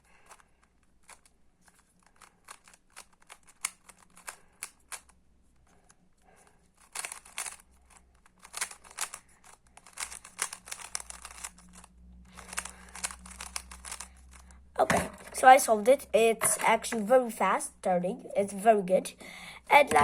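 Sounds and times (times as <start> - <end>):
speed cube plastic clicking: 0.0 - 15.4.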